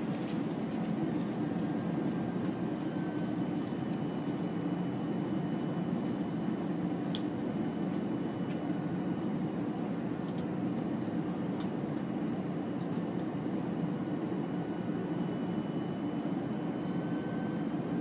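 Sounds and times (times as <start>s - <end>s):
airliner cabin rumble: 0.0s - 4.4s.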